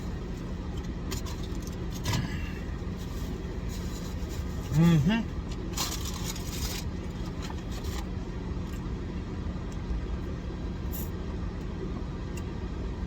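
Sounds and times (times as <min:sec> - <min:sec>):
car engine idling: 0:00.0 - 0:13.0
faint rustles and clicks: 0:00.2 - 0:04.8, 0:05.5 - 0:08.1.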